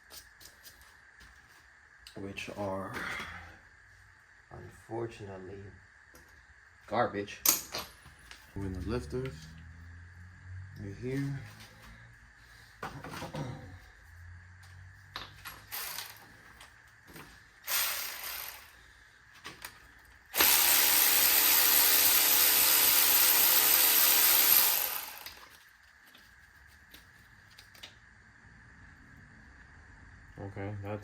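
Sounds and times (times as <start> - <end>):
power tool running: 15.7 - 16.2, 17.7 - 18.7, 20.3 - 25.5.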